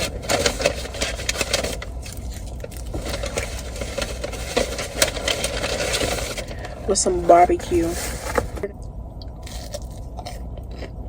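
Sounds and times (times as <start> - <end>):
fast-food bag rustling: 0.0 - 8.7
steady low hum: 0.0 - 11.0.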